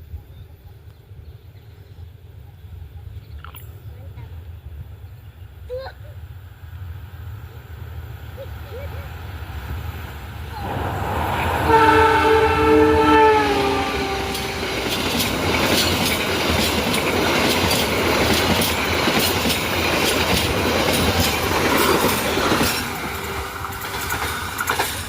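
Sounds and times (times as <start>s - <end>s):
train horn: 10.7s - 15.0s
train wheels clacking on rails: 13.0s - 25.0s.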